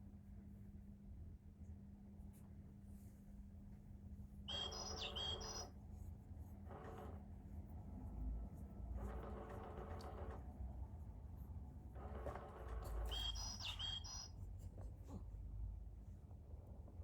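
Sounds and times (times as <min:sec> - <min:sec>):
high gliding bird chirps: 0:04.5 - 0:05.7, 0:13.1 - 0:14.3.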